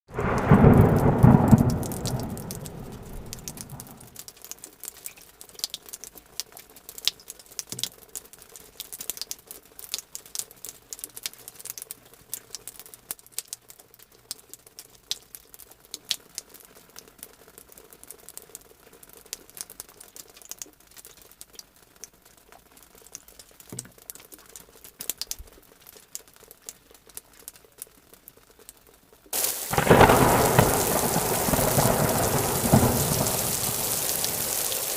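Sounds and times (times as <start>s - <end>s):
low thunder rumble: 0.1s - 4.1s, 29.4s - 34.9s
loud dense rain: 0.1s - 4.2s, 29.3s - 34.9s
rain drops pattering: 0.1s - 34.9s.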